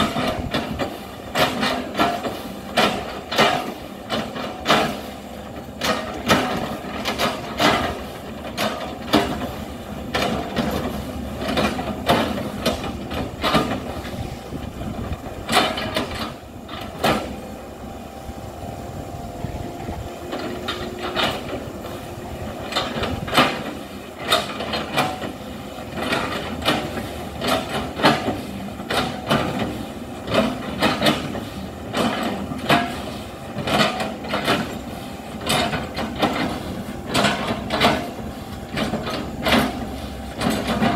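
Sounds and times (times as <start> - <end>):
excavator clanks and knocks: 0.0 - 40.9
excavator diesel engine running: 0.0 - 40.9.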